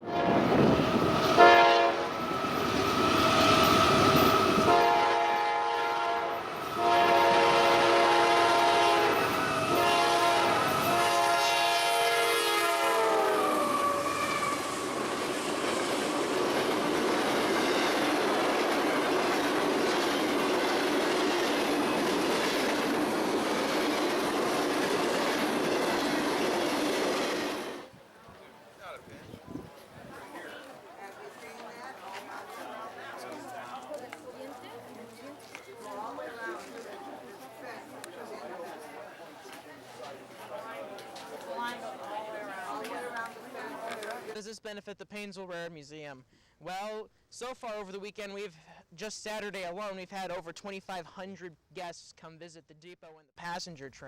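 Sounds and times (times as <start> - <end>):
train air horn blasts: 0.0 - 15.1
train wheels rumbling on rails: 0.0 - 27.9.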